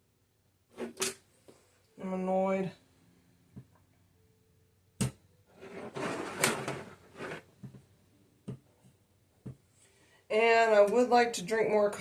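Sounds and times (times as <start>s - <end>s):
scraping and rustling: 5.6s - 7.5s.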